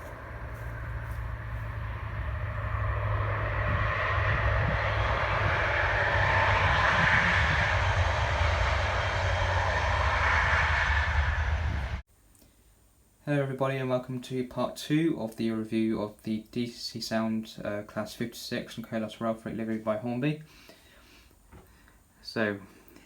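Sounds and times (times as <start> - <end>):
diesel locomotive engine running: 0.0 - 12.0.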